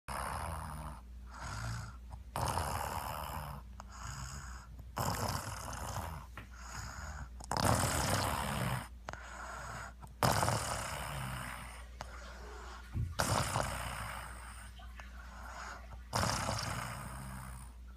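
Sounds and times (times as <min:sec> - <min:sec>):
man snoring: 0:00.1 - 0:11.8, 0:13.2 - 0:14.5, 0:16.1 - 0:17.8.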